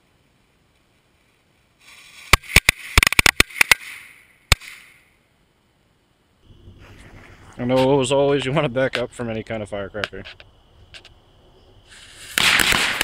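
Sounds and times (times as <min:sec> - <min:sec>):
fuse hiss: 0:00.0 - 0:05.2, 0:10.0 - 0:13.0
firecracker bangs: 0:11.9 - 0:13.0.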